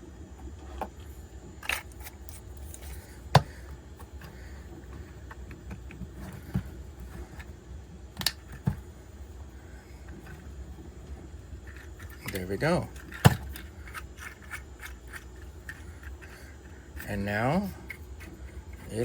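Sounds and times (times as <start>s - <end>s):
plastic parts clicking and tapping: 11.6s - 16.4s.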